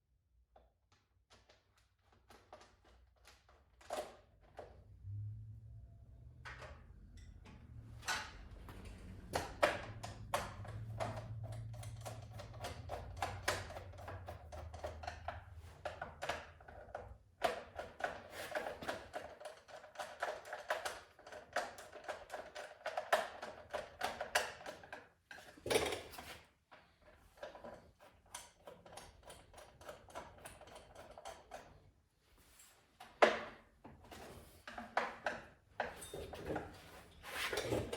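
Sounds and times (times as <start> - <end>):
tools clicking and rattling: 9.2 - 31.8.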